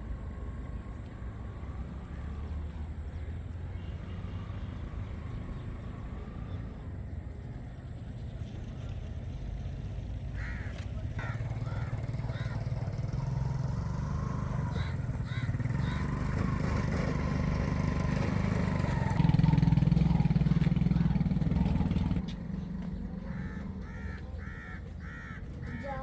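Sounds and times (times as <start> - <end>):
low outdoor rumble: 0.0 - 26.0
short bird calls: 23.0 - 26.0.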